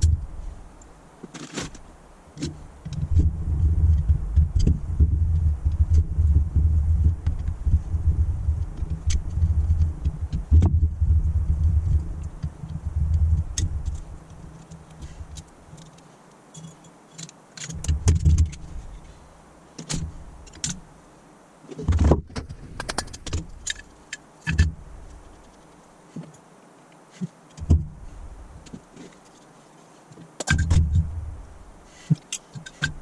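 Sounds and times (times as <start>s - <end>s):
low rumble: 2.6s - 14.2s, 30.6s - 31.8s.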